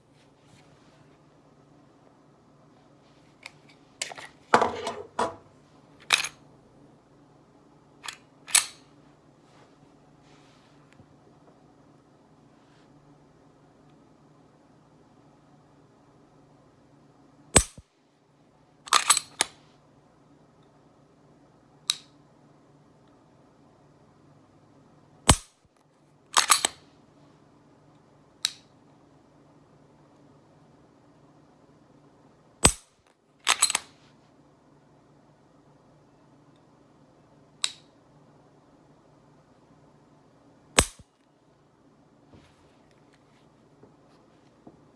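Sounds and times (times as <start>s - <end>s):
pistol action clicking: 8.1s - 8.8s, 17.6s - 17.8s, 18.9s - 19.5s, 25.3s - 25.5s, 26.4s - 26.8s, 32.6s - 32.9s, 33.5s - 33.9s, 40.8s - 41.0s
pistol shot: 17.6s - 17.8s, 40.8s - 41.0s.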